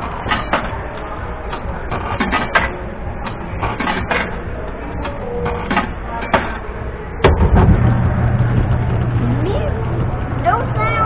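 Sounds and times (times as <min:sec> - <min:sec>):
background chatter: 0:00.0 - 0:11.0
ride motor low hum: 0:06.8 - 0:11.0.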